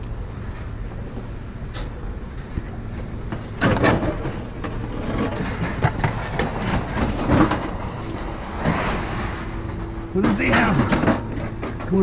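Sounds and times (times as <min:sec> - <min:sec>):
low machine rumble: 0:00.0 - 0:12.0
scrap metal clattering: 0:03.3 - 0:12.0.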